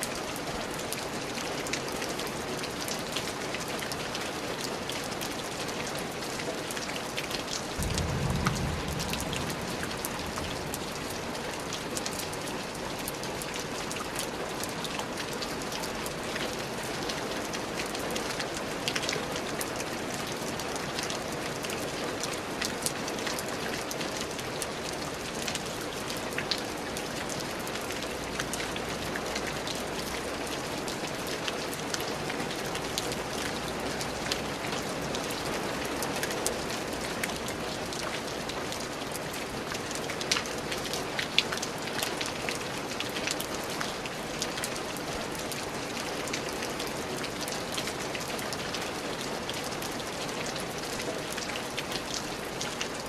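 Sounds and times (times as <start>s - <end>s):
rain pattering on a surface: 0.0s - 53.0s
low rumble: 7.8s - 12.0s.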